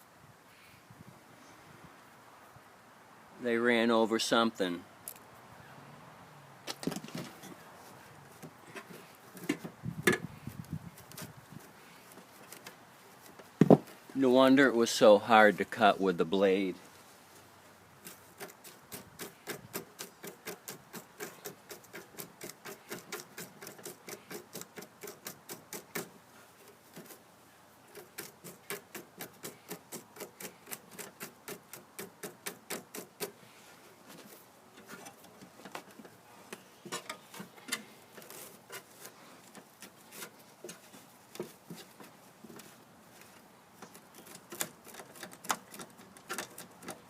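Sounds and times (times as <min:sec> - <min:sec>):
hand tool scraping debris: 0:18.0 - 0:27.2, 0:27.9 - 0:42.7.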